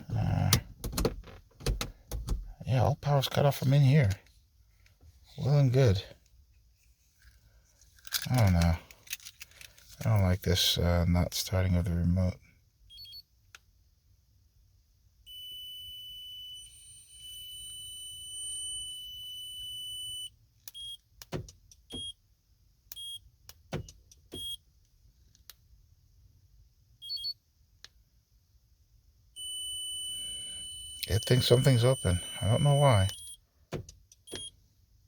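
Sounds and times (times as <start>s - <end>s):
electronic beeping tone: 29.4s - 33.4s.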